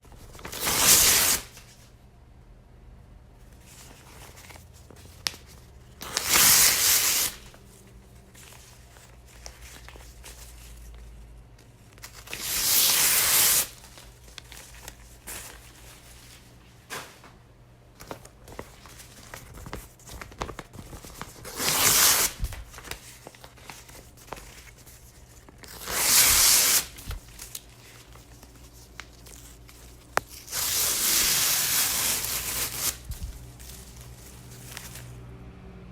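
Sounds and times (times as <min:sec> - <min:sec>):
paper tearing: 0:00.4 - 0:01.6, 0:06.0 - 0:07.6, 0:12.0 - 0:15.0, 0:20.4 - 0:23.0, 0:25.6 - 0:27.7, 0:30.3 - 0:35.1
paper rustling: 0:03.4 - 0:17.4, 0:18.0 - 0:35.2.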